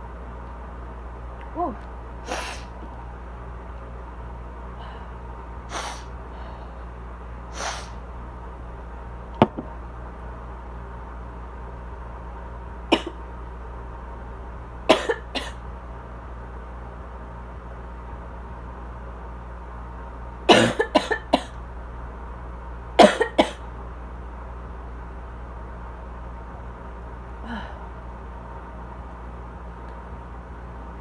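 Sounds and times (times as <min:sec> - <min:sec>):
air conditioner humming: 0:00.0 - 0:31.0
woman coughing: 0:12.9 - 0:13.2, 0:14.9 - 0:15.6, 0:20.5 - 0:21.6, 0:23.0 - 0:23.6.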